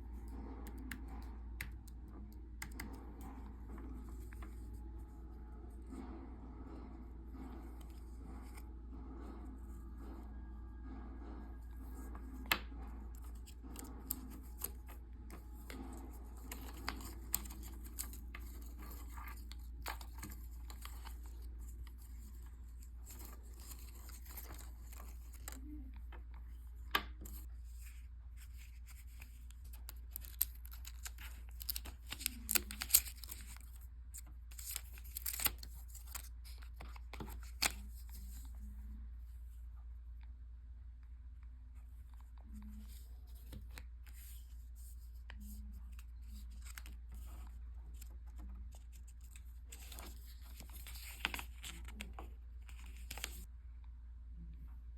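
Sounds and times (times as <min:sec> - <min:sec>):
steady low hum: 0:00.0 - 0:54.9
paper and plastic rustling: 0:11.9 - 0:38.7, 0:42.0 - 0:53.5.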